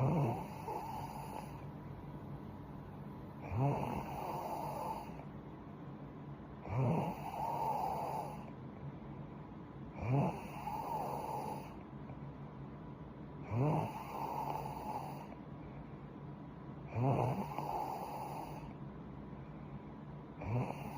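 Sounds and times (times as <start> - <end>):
woman snoring: 0.0 - 1.7, 3.4 - 5.2, 6.6 - 8.5, 10.0 - 11.8, 13.5 - 15.4, 16.9 - 18.7, 20.4 - 20.9.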